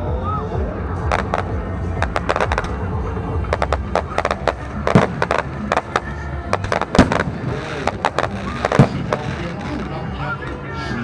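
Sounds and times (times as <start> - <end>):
fireworks cracking and popping: 1.1 - 2.8, 3.4 - 10.0
heavy firework bangs: 1.1 - 2.8, 3.5 - 9.9.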